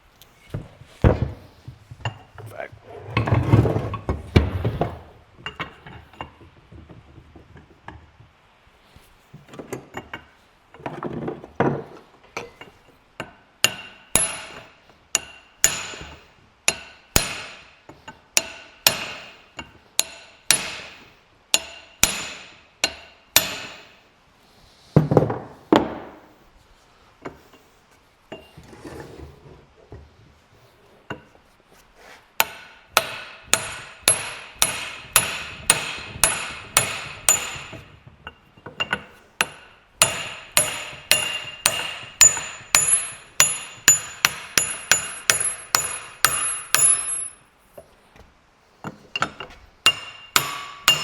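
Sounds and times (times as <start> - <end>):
hammer striking metal punch: 13.6 - 17.7, 18.4 - 24.0, 32.4 - 47.4, 49.2 - 51.0.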